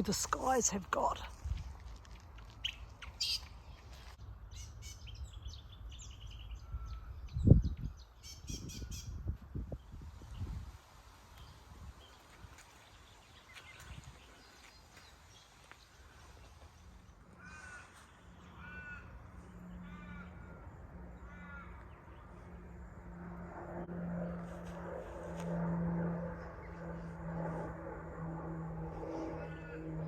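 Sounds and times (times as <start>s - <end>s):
low steady drone: 16.0s - 30.0s
crow-like bird harsh calls: 17.3s - 22.2s, 29.4s - 30.0s.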